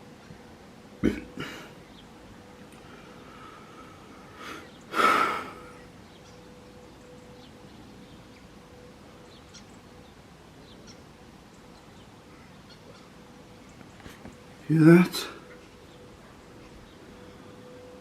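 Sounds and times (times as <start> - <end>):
faint steady tone: 0.0 - 18.0.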